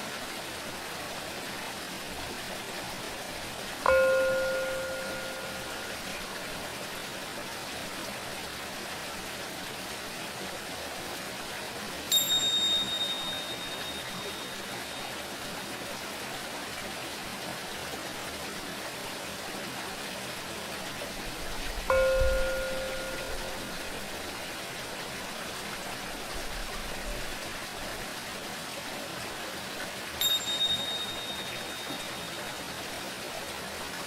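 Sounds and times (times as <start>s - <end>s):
running water hiss: 0.0s - 34.0s
tingsha bell ringing: 3.8s - 6.8s, 12.1s - 15.2s, 21.9s - 24.0s, 30.2s - 32.7s.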